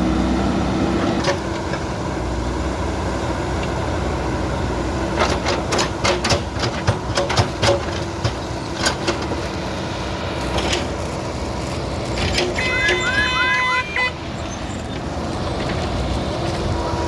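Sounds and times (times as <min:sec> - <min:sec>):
diesel engine running: 0:00.0 - 0:17.0
sharp metallic clanks and knocks: 0:05.2 - 0:09.4, 0:12.2 - 0:13.1.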